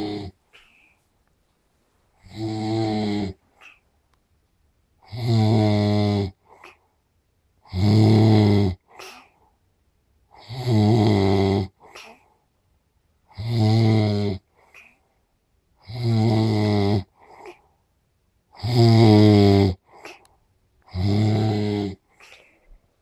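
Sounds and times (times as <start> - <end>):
person snoring loudly: 0.0 - 0.4, 2.2 - 3.4, 5.1 - 6.4, 7.7 - 8.8, 10.4 - 11.8, 13.3 - 14.4, 15.8 - 17.6, 18.6 - 19.9, 20.9 - 22.0
faint breath out: 0.5 - 1.1, 22.1 - 22.9.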